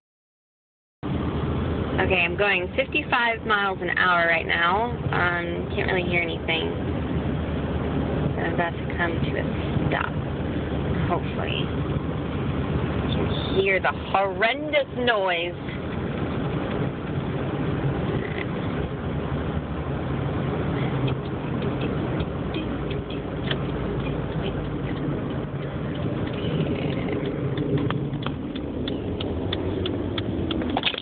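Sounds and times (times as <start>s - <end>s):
car engine low thrumming: 1.0s - 14.5s, 15.2s - 31.0s.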